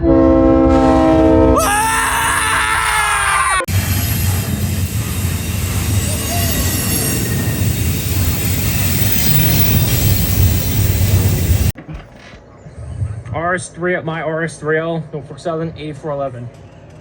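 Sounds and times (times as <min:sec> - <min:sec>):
train rolling past: 0:00.0 - 0:11.8.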